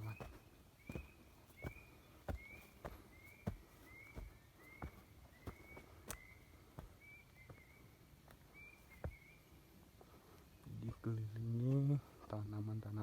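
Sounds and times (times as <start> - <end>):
footsteps on a trail: 0.0 - 12.4.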